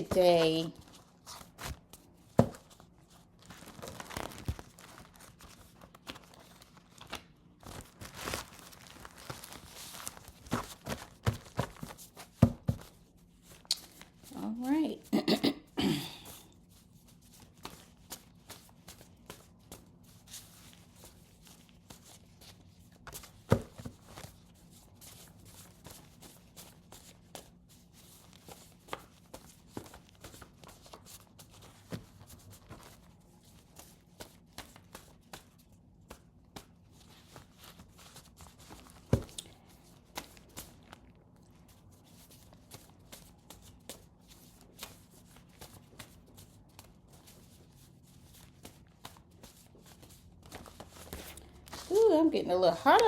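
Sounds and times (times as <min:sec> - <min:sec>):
cards being shuffled: 0:16.6 - 0:52.2.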